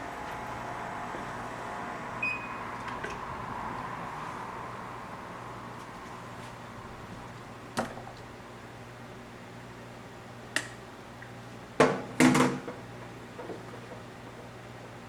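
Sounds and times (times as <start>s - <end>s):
low steady hum: 0.0s - 8.6s.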